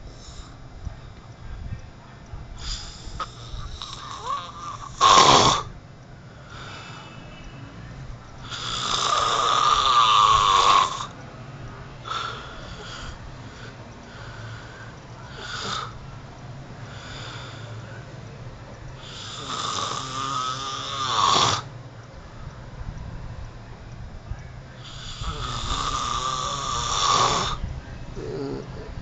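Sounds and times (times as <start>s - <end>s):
soft breathing: 0.0s - 1.9s, 2.5s - 5.0s, 6.0s - 20.9s
man snoring: 2.6s - 5.7s, 8.4s - 11.2s, 12.0s - 16.0s, 16.9s - 17.8s, 19.0s - 21.7s, 24.8s - 27.6s, 28.2s - 28.9s.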